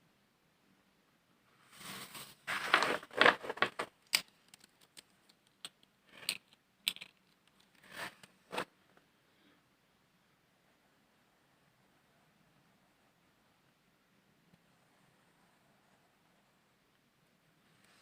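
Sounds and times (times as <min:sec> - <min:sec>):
paper or plastic crinkling: 0:01.8 - 0:03.9.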